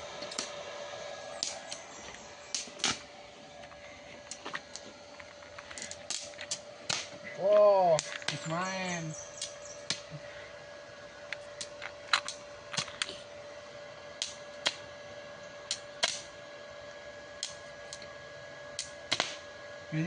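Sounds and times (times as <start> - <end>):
welding arc hissing and popping: 0.0 - 0.6, 1.2 - 10.5, 11.3 - 13.3, 14.2 - 14.9, 15.6 - 16.4, 17.3 - 18.1, 18.7 - 20.0
welder whine: 0.0 - 20.0.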